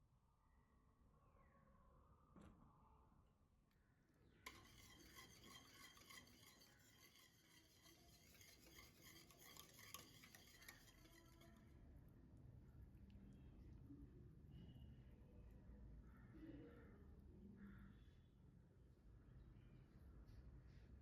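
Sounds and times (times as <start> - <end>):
utensil scraping in a pan: 4.4 - 11.7.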